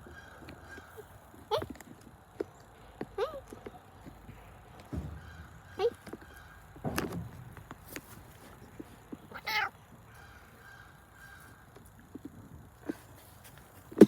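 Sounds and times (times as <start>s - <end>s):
handling bump: 4.0s - 9.4s
cat meowing: 9.3s - 9.8s.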